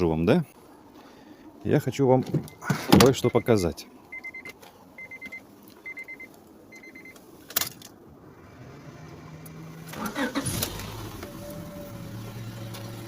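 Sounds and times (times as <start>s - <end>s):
car warning chime beeps: 2.4s - 7.2s
car engine starting and idling: 7.5s - 13.0s.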